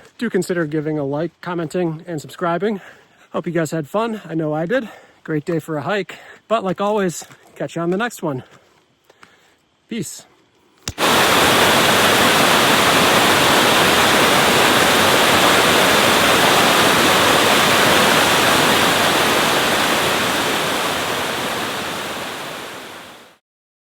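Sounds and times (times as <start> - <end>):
waterfall rushing: 10.9 - 23.4.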